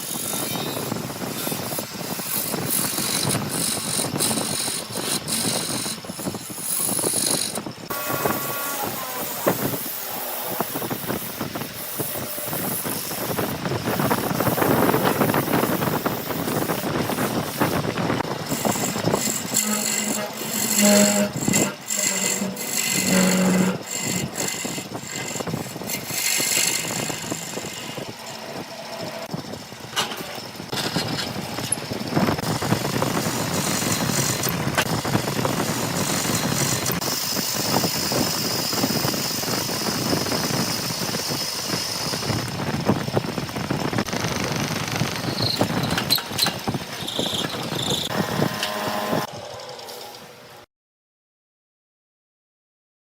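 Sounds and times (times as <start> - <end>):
high squeal: 0.0 - 30.6, 44.8 - 50.4
woodworking machine whirring: 0.0 - 50.6.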